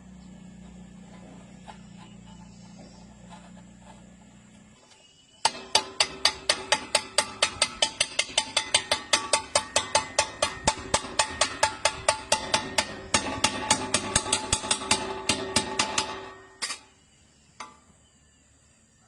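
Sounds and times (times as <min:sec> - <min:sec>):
low hum: 0:00.0 - 0:05.0.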